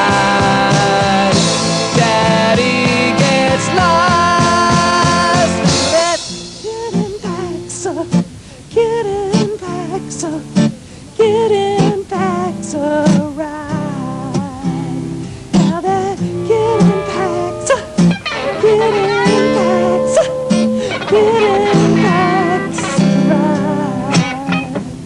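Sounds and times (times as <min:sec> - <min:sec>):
guitar bent notes: 0:15.9 - 0:25.0
rock band playing: 0:16.3 - 0:24.9.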